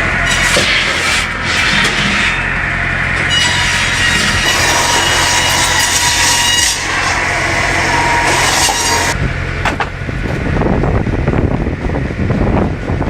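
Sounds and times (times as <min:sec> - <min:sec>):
saw whine: 0:00.0 - 0:09.6
firewood processor running: 0:00.0 - 0:10.5.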